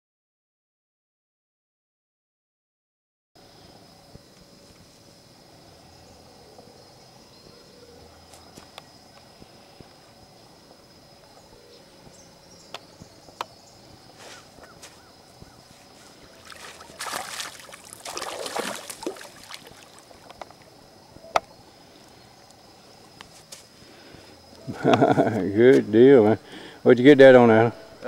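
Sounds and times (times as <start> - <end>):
fish thrashing water splashing: 16.3 - 20.3.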